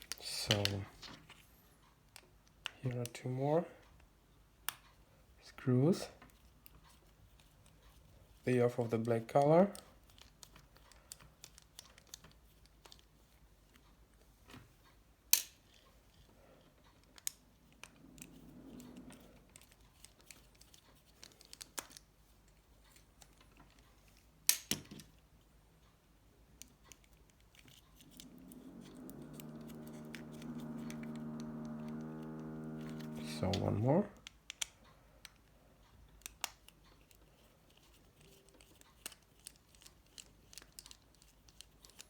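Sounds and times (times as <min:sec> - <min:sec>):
plastic parts being handled: 0:09.7 - 0:13.8, 0:17.0 - 0:25.2, 0:36.2 - 0:42.0
steady low hum: 0:17.4 - 0:20.3, 0:27.6 - 0:34.2.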